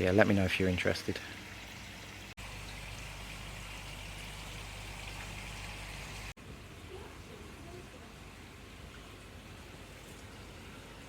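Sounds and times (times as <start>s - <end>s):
pond water running and splashing: 0.0s - 6.4s, 8.2s - 11.0s.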